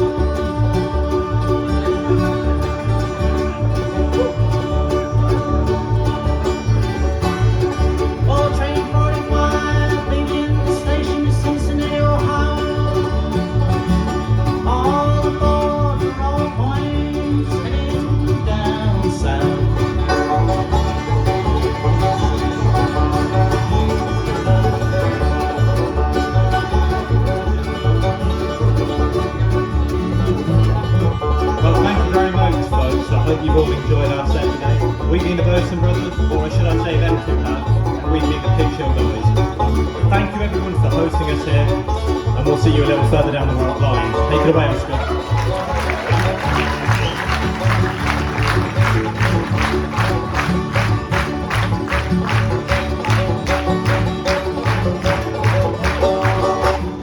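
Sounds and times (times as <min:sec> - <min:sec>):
banjo and guitar picking: 0:00.0 - 0:57.0
bowed fiddle sliding: 0:17.6 - 0:57.0
steady bass beat: 0:42.8 - 0:57.0.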